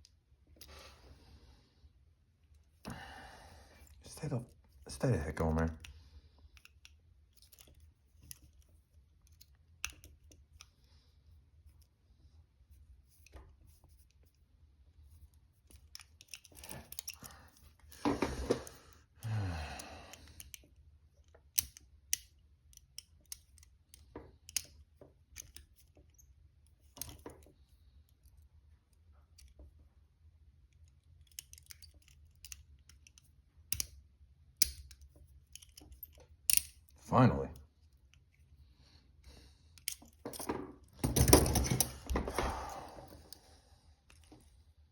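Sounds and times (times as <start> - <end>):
rustling and handling: 3.7 - 18.9
lock pick clicking and scraping: 6.5 - 10.7, 15.6 - 18.8, 21.4 - 27.5, 30.8 - 34.0, 34.6 - 37.0, 39.8 - 43.4, 44.1 - 44.5.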